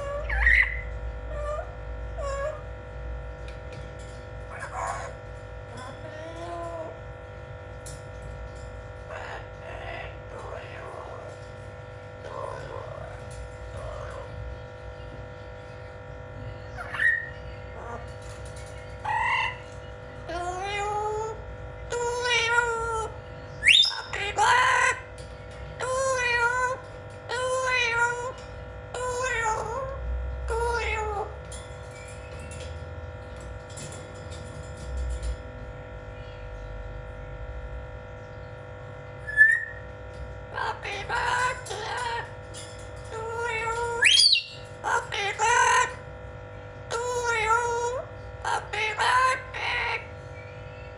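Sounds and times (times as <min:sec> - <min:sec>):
parrot calling: 0:00.0 - 0:02.7, 0:04.5 - 0:07.0, 0:08.9 - 0:14.3, 0:16.7 - 0:18.2, 0:18.9 - 0:25.2, 0:25.8 - 0:32.7, 0:39.2 - 0:39.9, 0:40.5 - 0:46.1, 0:46.9 - 0:50.9
parrot whistle: 0:00.1 - 0:00.9, 0:23.6 - 0:24.2, 0:39.2 - 0:39.8, 0:44.0 - 0:44.6.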